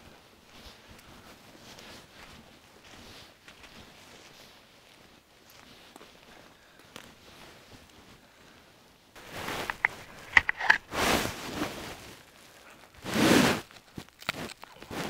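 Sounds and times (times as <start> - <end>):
wood and bark rustling: 9.2 - 15.0.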